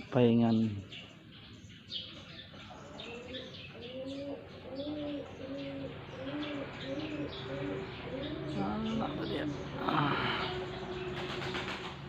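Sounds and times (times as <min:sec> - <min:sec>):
small birds chirping: 0:00.0 - 0:12.0
bird cooing: 0:02.6 - 0:11.8.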